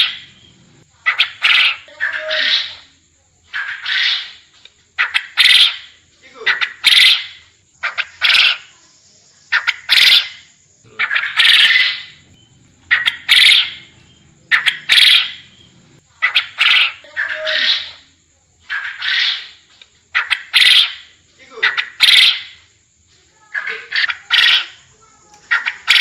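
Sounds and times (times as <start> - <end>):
quail calling: 0.0 - 0.4, 1.0 - 8.8, 9.5 - 22.6, 23.5 - 26.0.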